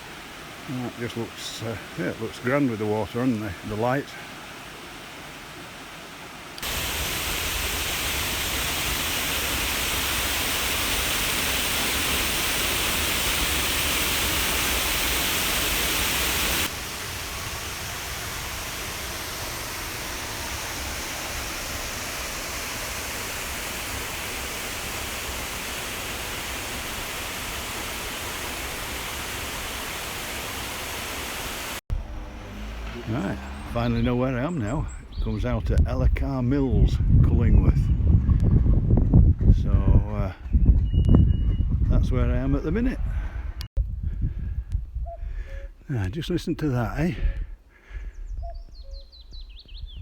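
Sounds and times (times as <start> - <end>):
water rushing over a weir: 0.0 - 31.8.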